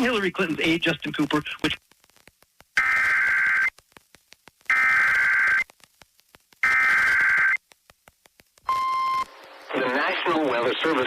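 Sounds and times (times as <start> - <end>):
buzzing digital data tones: 2.8 - 3.8, 4.7 - 5.8, 6.6 - 7.6.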